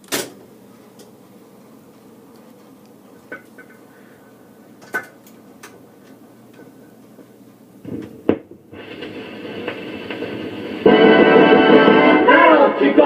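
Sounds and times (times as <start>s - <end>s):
steady hiss: 7.6s - 13.0s
jukebox music: 8.8s - 13.0s.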